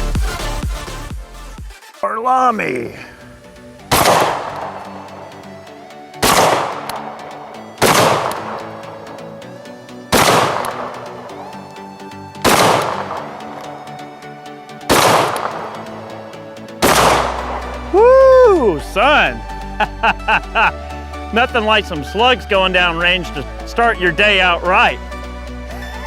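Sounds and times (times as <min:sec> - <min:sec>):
background music: 0:00.0 - 0:26.0
shotgun shots echoing: 0:03.9 - 0:04.9, 0:06.2 - 0:07.0, 0:07.8 - 0:08.8, 0:10.1 - 0:11.2, 0:12.4 - 0:13.7, 0:14.9 - 0:15.8, 0:16.8 - 0:17.6.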